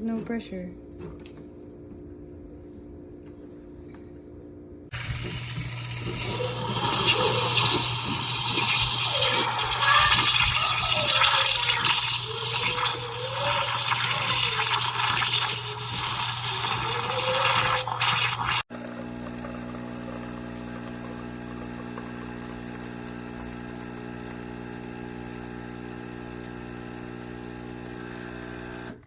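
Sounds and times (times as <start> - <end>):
water gurgling and sputtering: 4.9 - 23.7
espresso machine pump buzzing: 4.9 - 29.0.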